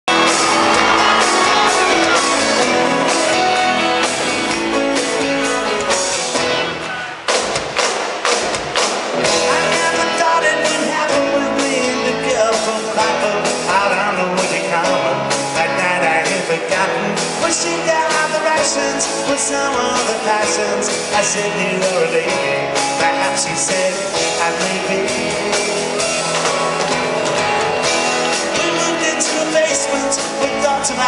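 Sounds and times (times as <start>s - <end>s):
rock band playing live: 0.1s - 31.0s.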